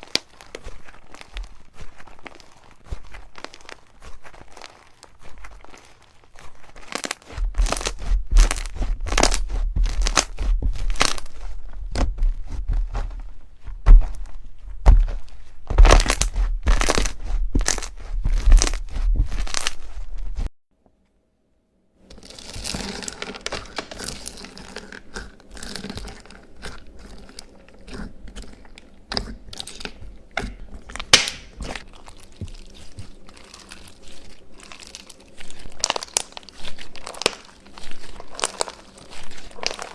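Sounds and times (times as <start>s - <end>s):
fine slime crackling: 0.0s - 20.5s, 22.0s - 39.9s
slime clicking and popping: 6.8s - 11.2s, 15.7s - 18.8s, 29.1s - 31.6s
low rumble: 7.4s - 20.5s.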